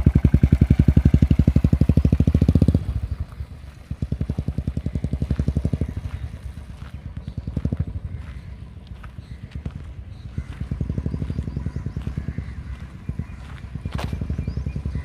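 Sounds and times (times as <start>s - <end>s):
single-cylinder motorcycle engine thumping: 0.0s - 15.0s.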